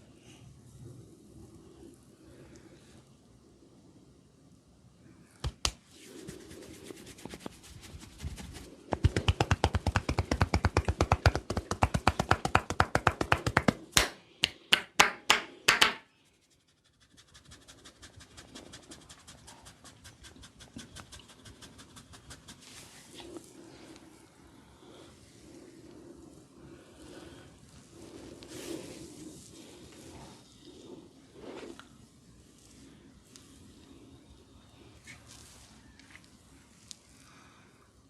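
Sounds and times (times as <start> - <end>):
hands slapping a body: 5.4 - 5.8, 8.2 - 16.0
sharp snaps: 5.4 - 5.9, 8.9 - 16.1
light fast tapping: 8.2 - 14.6.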